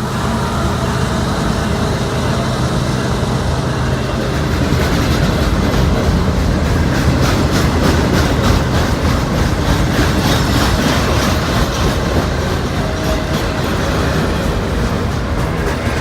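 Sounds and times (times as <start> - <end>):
freight train rumbling past: 0.0 - 16.0
wheels clicking over rail joints: 4.4 - 16.0.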